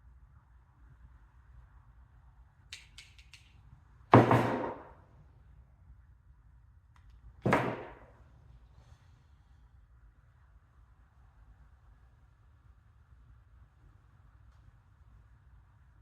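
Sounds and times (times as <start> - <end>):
hand tool clicks: 2.7 - 3.6
sharp ringing knocks: 4.2 - 4.9, 7.5 - 8.0.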